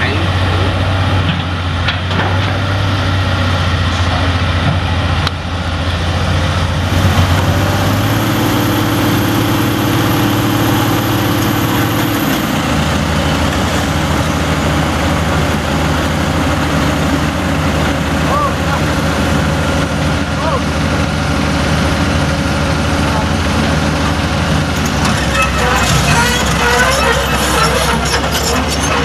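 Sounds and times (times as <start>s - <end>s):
excavator diesel engine humming: 0.0s - 29.0s
higher engine tone: 6.6s - 29.0s.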